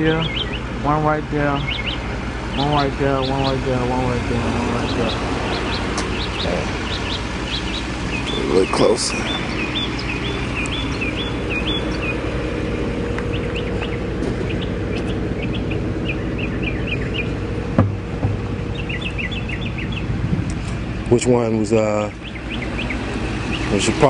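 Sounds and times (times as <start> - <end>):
small birds chirping: 0.0 - 24.0
steady low hum: 0.0 - 24.0
knock: 17.8 - 18.4.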